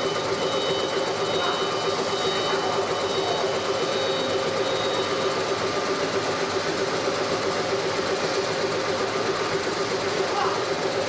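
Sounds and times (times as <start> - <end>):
mid-pitched whine: 0.0 - 6.4
lathe machine hum: 0.0 - 11.0.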